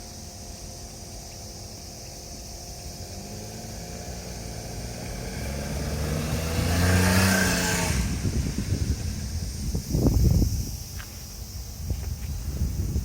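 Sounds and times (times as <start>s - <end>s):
tyre noise on road: 0.0s - 13.0s
vehicle engine passing by: 2.8s - 9.8s.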